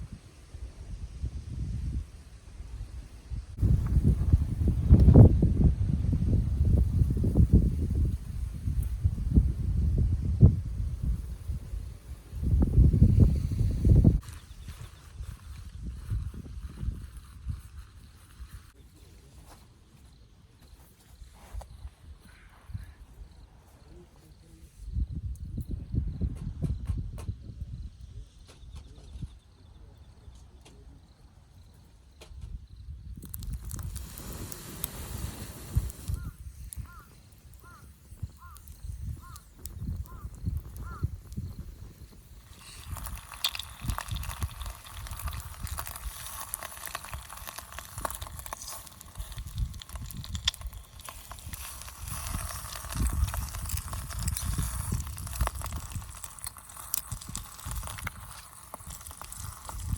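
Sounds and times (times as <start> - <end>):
campfire crackling and popping: 3.6 - 18.8, 33.1 - 59.9
bird calling: 36.1 - 41.2.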